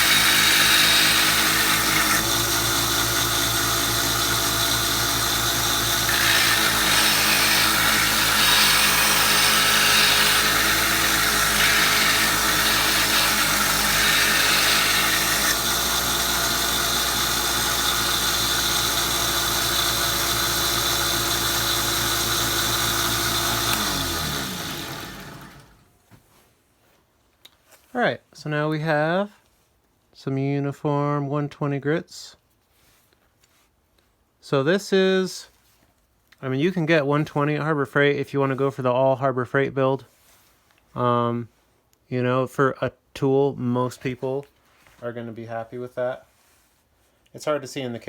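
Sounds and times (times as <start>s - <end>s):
belt sander grinding metal: 0.0s - 25.8s.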